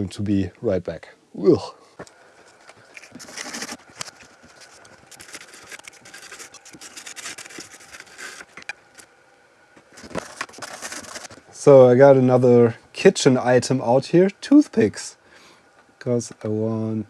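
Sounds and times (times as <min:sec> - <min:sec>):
hand tool scrubbing circuit board: 0:02.8 - 0:09.1, 0:10.0 - 0:11.4.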